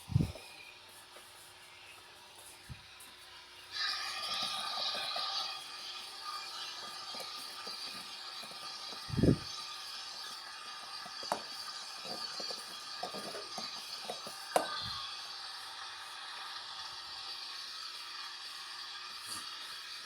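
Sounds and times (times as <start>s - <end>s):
washing machine motor hum: 0.0s - 20.0s.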